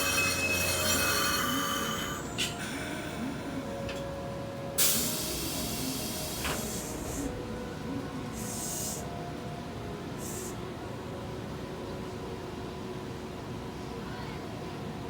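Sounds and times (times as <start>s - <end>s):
train steady hum: 0.0s - 15.0s
compressed air hissing: 4.8s - 7.3s, 8.4s - 9.0s.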